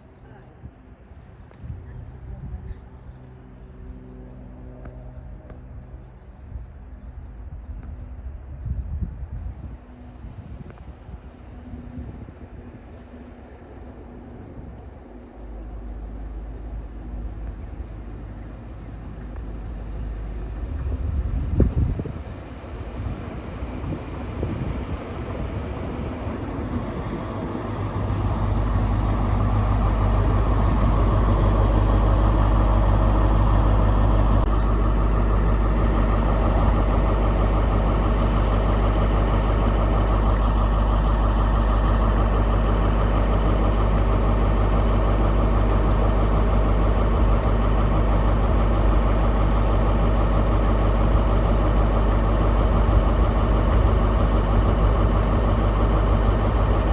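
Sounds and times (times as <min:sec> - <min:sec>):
diesel train engine droning: 0:00.0 - 0:56.9.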